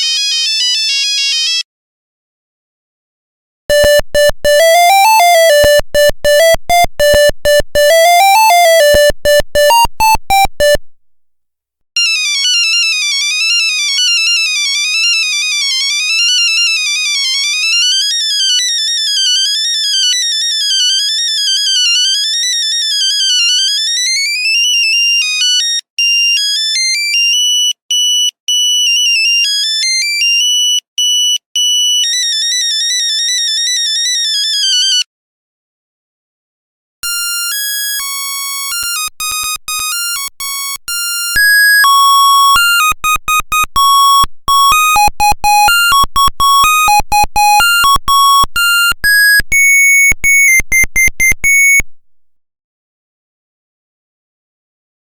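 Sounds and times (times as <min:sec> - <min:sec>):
phone ringtone beeping melodies: 0:03.7 - 0:11.0, 0:37.0 - 0:52.0.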